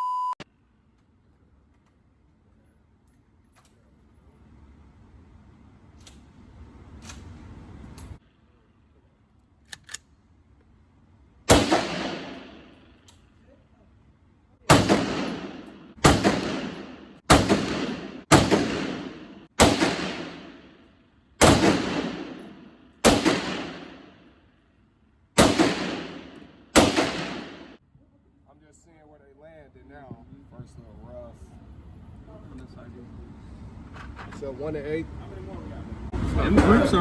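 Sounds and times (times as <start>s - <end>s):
rifle shots echoing: 11.5s - 13.0s, 14.7s - 24.4s, 25.4s - 27.8s.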